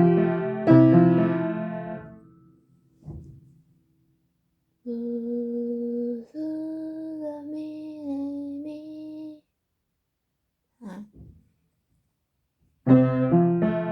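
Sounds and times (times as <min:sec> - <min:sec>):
piano chord: 0:00.0 - 0:02.6, 0:12.9 - 0:13.9
child singing held notes: 0:04.9 - 0:09.4.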